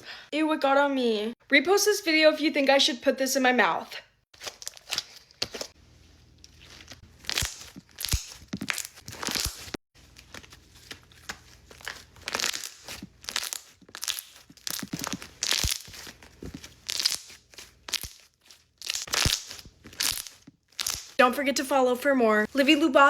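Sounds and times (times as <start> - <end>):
slime crackling and tearing: 6.6 - 9.8, 11.2 - 21.2.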